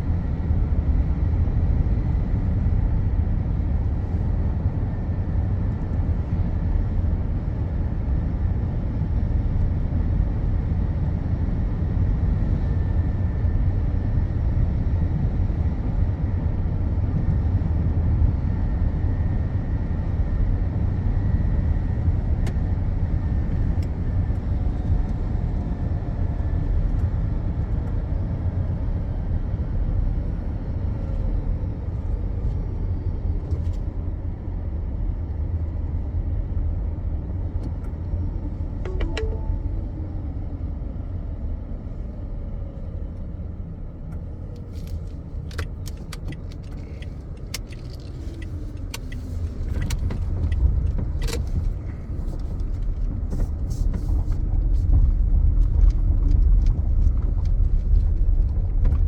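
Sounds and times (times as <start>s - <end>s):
car interior rumble: 41.3s - 59.0s.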